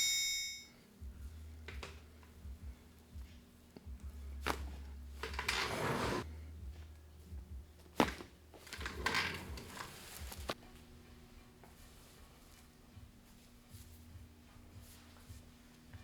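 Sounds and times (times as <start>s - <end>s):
rustling of clothing: 7.7s - 16.0s.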